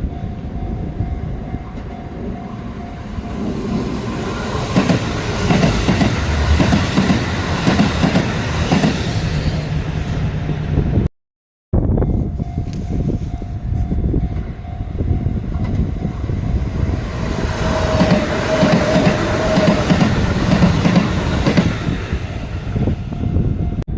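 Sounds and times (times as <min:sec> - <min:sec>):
train rumble: 0:00.0 - 0:11.1, 0:11.8 - 0:23.9
wheels clacking over rail joints: 0:17.6 - 0:22.0.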